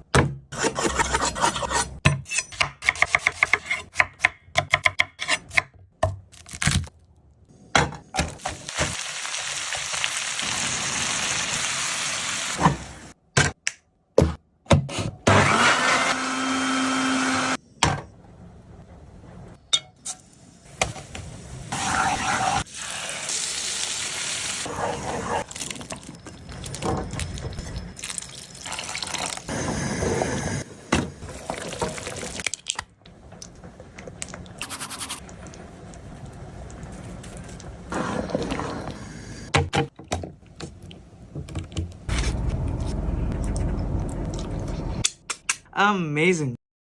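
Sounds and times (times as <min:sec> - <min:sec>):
food sizzling in a pan: 0:08.4 - 0:12.6, 0:21.0 - 0:25.0.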